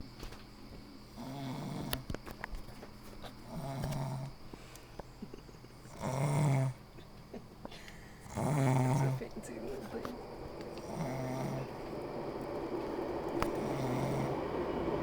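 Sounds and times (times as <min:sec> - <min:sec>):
woman snoring: 0:01.2 - 0:02.0, 0:03.5 - 0:04.3, 0:05.9 - 0:06.8, 0:07.8 - 0:09.2, 0:10.8 - 0:11.8, 0:13.6 - 0:14.4.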